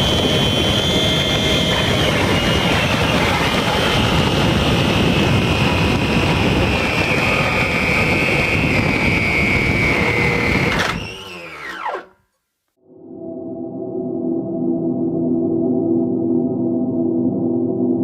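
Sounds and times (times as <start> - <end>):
ducted fan whining: 0.0 - 12.2.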